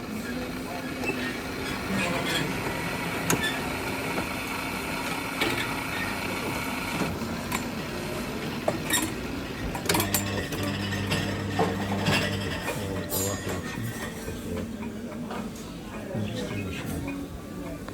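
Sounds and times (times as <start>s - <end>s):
espresso machine running: 0.0s - 13.8s.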